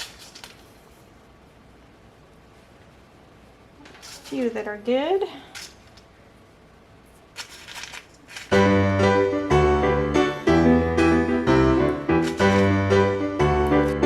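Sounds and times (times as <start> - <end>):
piano chords: 8.5 - 14.0.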